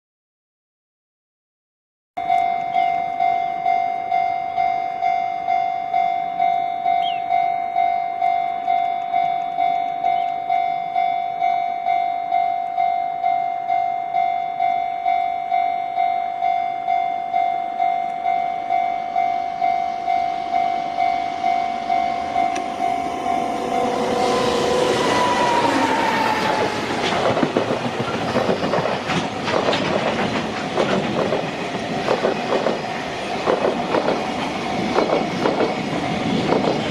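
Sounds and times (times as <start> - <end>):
level-crossing warning bell: 2.2 - 29.5.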